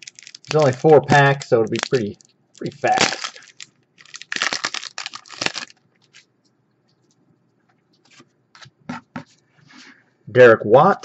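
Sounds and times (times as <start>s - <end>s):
cards rustling: 0.0s - 6.3s
wrapper tearing and crinkling: 0.0s - 6.3s.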